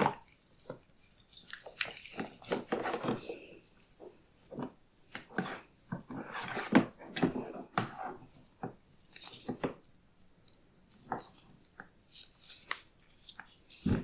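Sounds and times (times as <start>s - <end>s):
scraping or rubbing: 5.3s - 8.3s.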